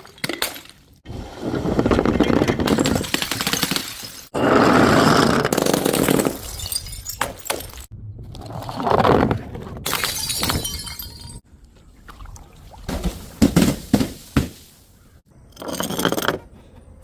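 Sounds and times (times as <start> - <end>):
broken glass crunching: 2.6 - 4.3, 5.7 - 7.9, 9.9 - 11.4, 13.0 - 14.8
glass bottles smashing: 2.7 - 4.4, 5.7 - 7.9, 9.9 - 11.4, 12.9 - 14.8.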